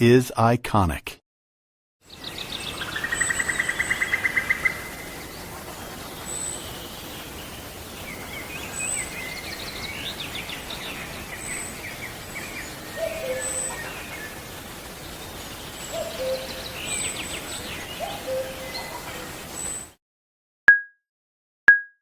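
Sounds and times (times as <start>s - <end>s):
bird chirps: 2.1s - 19.9s
bird trill: 2.2s - 5.3s, 6.1s - 19.9s
steady background noise: 2.2s - 19.9s.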